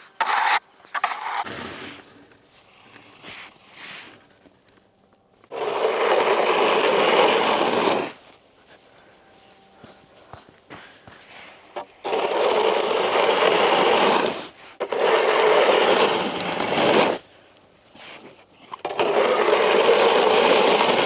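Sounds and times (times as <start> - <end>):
snow shovel scraping ice: 0.0 - 4.3, 5.5 - 8.3, 11.3 - 17.3, 18.0 - 21.0.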